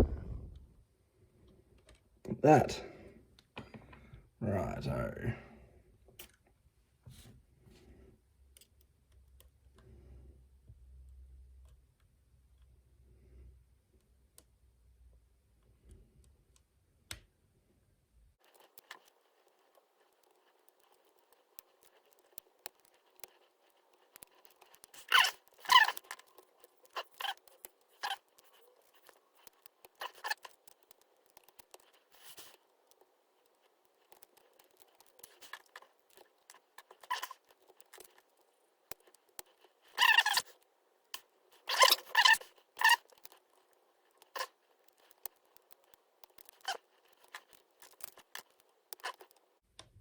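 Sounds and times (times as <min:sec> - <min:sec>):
lock pick clicking and scraping: 0:18.4 - 0:40.6, 0:41.2 - 0:49.5.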